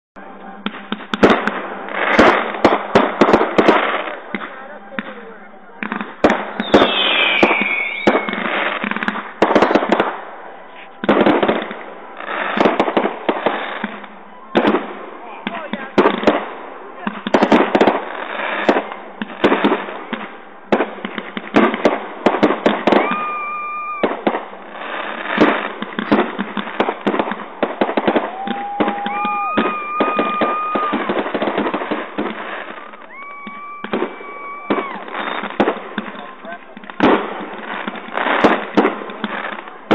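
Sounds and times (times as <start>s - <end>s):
fireworks bangs and crackles: 0.2s - 39.9s
firework whistles: 6.2s - 14.8s, 21.5s - 36.3s.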